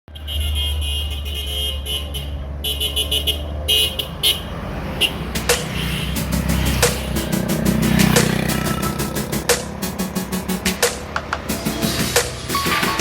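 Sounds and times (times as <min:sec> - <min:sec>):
bus horn: 0:00.1 - 0:06.2, 0:12.4 - 0:13.0
bus engine running: 0:02.1 - 0:13.0.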